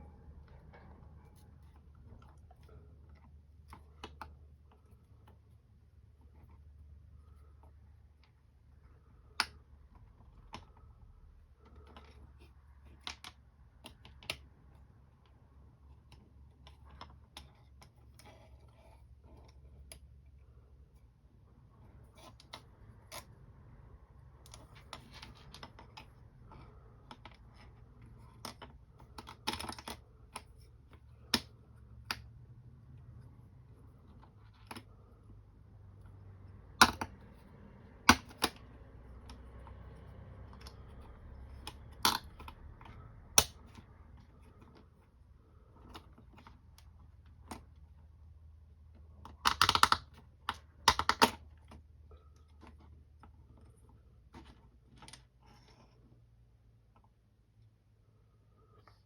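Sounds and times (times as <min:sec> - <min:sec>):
parts clicking and tapping: 0:24.2 - 0:35.4, 0:36.0 - 0:45.1, 0:48.9 - 0:55.8.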